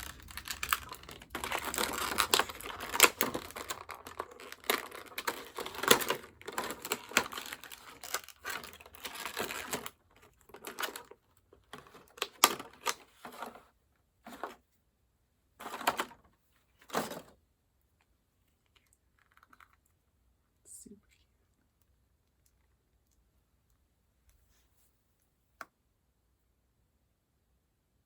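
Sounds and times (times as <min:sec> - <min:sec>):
plastic packaging crinkling: 0:00.0 - 0:13.5
packaging rustling: 0:00.0 - 0:13.6.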